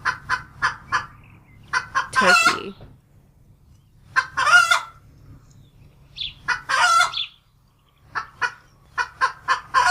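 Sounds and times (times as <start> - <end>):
fowl calling: 4.0 - 5.0, 6.2 - 7.4.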